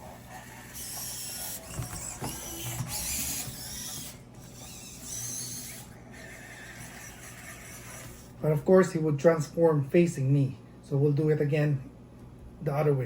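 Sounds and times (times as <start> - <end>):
servo motors whirring: 0.0 - 8.4.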